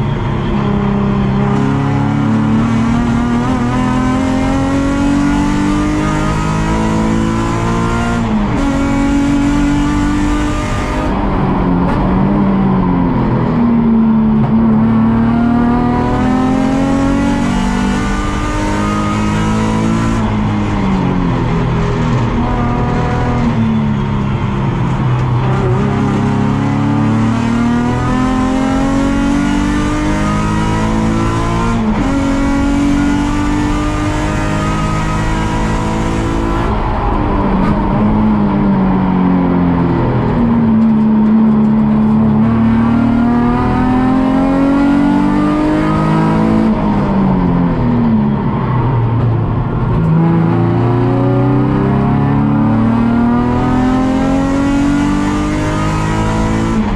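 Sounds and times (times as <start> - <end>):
race car engine revving: 0.0 - 56.9.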